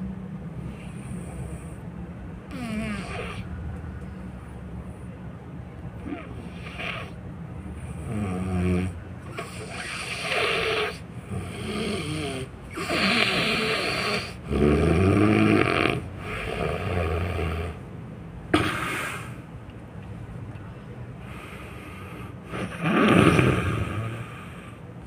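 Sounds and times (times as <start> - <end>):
person snoring loudly: 2.5 - 3.4, 7.9 - 17.8, 22.5 - 24.7.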